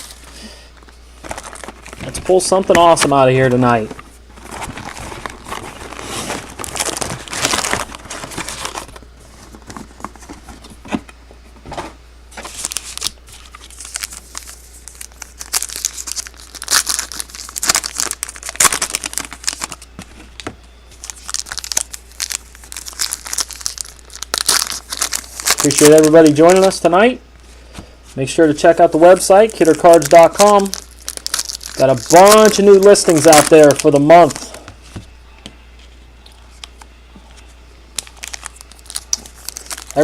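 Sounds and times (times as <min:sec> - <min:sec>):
card pack wrappers tearing: 0:01.2 - 0:10.5, 0:12.4 - 0:26.8, 0:28.7 - 0:34.6, 0:37.9 - 0:40.0.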